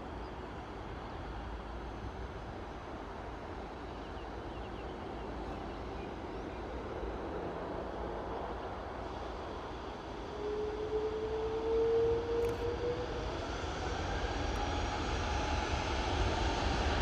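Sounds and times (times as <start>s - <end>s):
jet engine whine rising in pitch: 5.1s - 17.0s.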